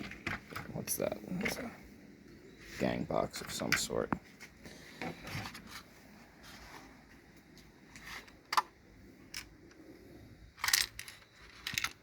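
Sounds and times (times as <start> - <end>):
plastic parts clicking: 10.5 - 12.0.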